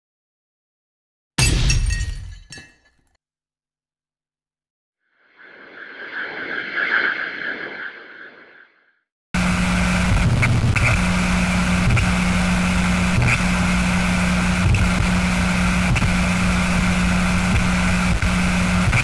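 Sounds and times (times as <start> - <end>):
harsh noise drone: 5.3 - 8.7, 9.4 - 19.0
low hum: 5.4 - 8.6.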